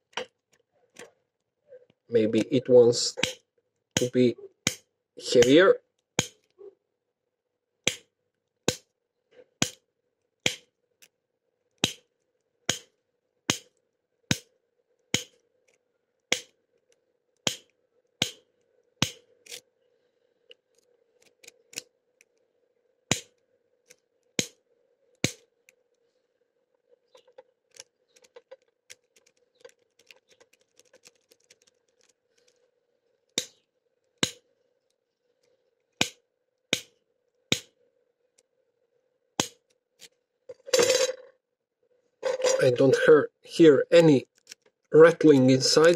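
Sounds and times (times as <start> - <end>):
lock pick raking padlock pins: 19.0 - 19.7, 20.5 - 22.4, 27.1 - 32.7, 44.0 - 45.5.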